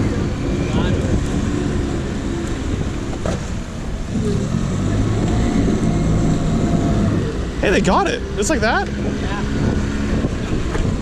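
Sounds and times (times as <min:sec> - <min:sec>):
wind: 0:00.0 - 0:11.0.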